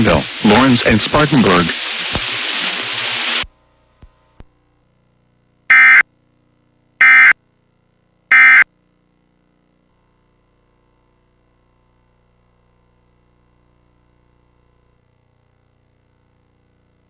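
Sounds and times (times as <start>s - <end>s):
steady hiss: 0.0s - 3.5s.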